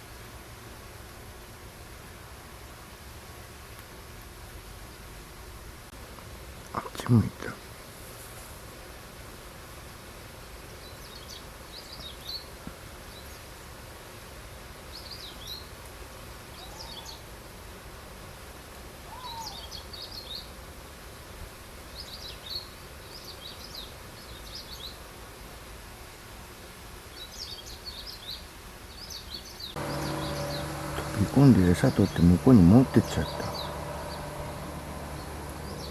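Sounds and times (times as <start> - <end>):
steady outdoor hiss: 0.0 - 35.9
small birds chirping: 16.6 - 17.2, 27.2 - 35.9
low rising and falling bird notes: 29.8 - 35.9.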